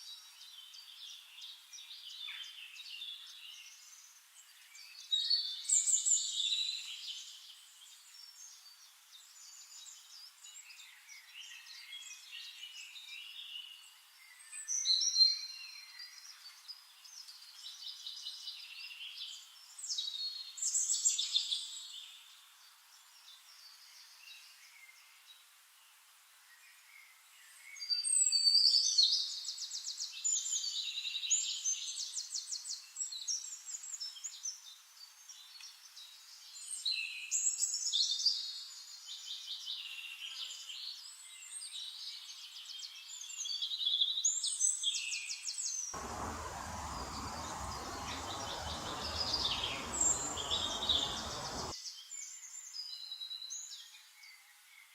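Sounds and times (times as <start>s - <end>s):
steady rushing noise: 46.0s - 51.7s
small songbirds chirping: 46.0s - 54.9s.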